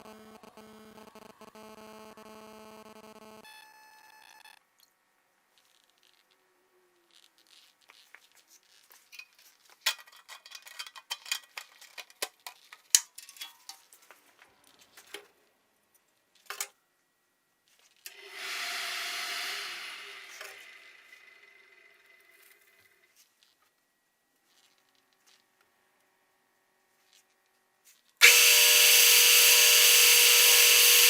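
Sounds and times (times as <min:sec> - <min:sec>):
steel clinking and knocking: 0:09.1 - 0:13.9.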